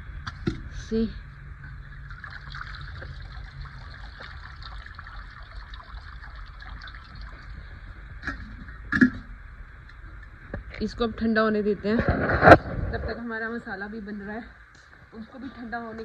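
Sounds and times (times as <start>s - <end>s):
water trickling and dripping: 1.6s - 10.3s.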